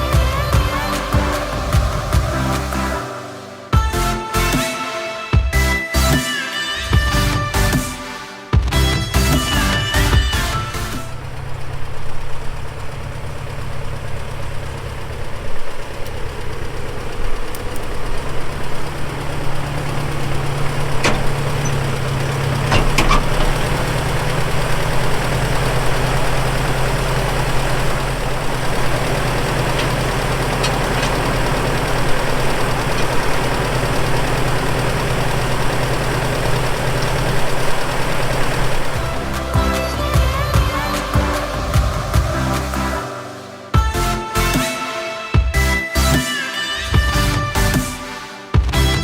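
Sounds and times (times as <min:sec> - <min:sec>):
engine running steadily: 0:00.0 - 0:04.6, 0:08.8 - 0:44.6.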